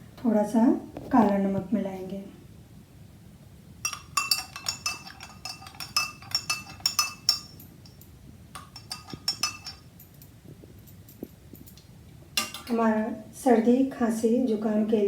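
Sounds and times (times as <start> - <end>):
spoon clinking against glass: 3.8 - 10.3, 12.4 - 12.8.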